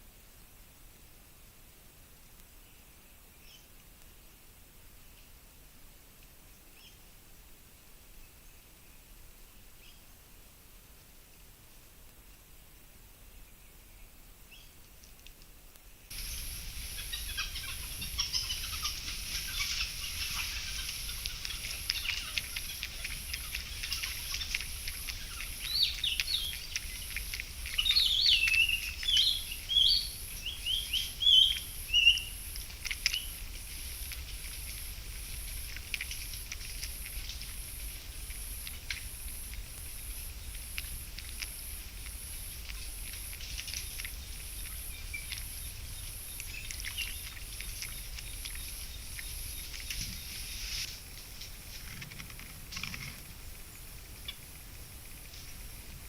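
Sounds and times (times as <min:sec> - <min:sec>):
birds chirping: 0:16.1 - 0:33.8, 0:42.8 - 0:50.9
insects hissing: 0:16.1 - 0:56.0.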